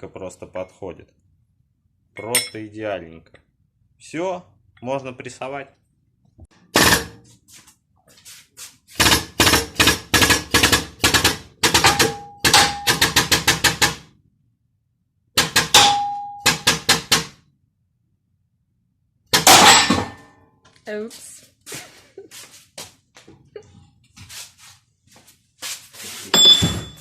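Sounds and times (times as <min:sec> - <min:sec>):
hammer striking metal: 0:11.6 - 0:13.5, 0:15.4 - 0:17.3, 0:19.3 - 0:20.4.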